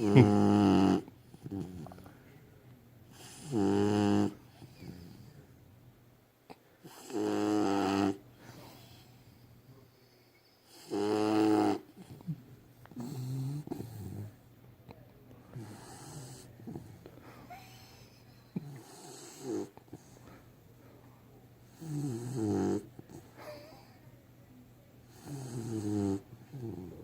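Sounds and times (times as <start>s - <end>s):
puppy snoring: 0.0s - 2.1s, 3.1s - 5.4s, 6.8s - 9.3s, 10.6s - 14.4s, 15.5s - 20.4s, 21.6s - 24.0s, 25.0s - 27.0s.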